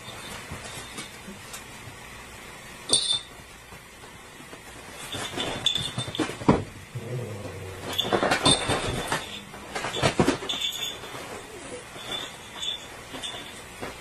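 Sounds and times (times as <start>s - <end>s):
sharp ringing clink: 2.9s - 3.3s
hard objects knocking and rattling: 5.1s - 14.0s.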